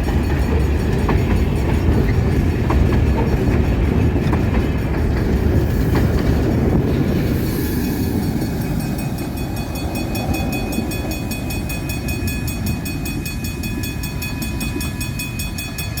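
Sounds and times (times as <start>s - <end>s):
freight train rumble and rattle: 0.0s - 16.0s
fast repeating high ringing: 7.7s - 16.0s.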